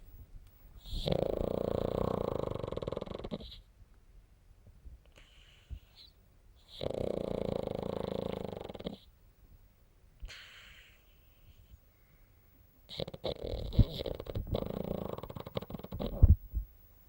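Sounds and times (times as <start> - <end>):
dog snoring: 0.8 - 3.7, 5.1 - 9.1, 12.9 - 16.4.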